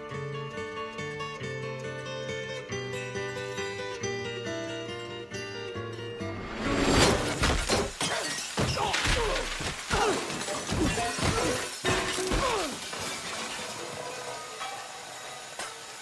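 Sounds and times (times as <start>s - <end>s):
crashes and smashes: 6.4s - 16.0s.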